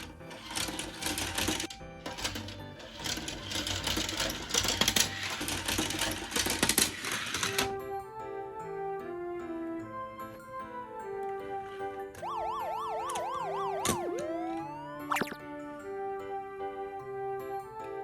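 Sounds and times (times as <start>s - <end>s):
toy vehicles clattering on track: 0.0s - 7.8s
background music: 0.0s - 18.0s.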